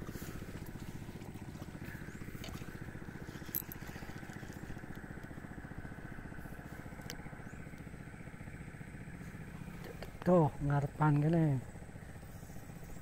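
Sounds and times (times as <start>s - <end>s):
small engine running: 0.0s - 13.0s.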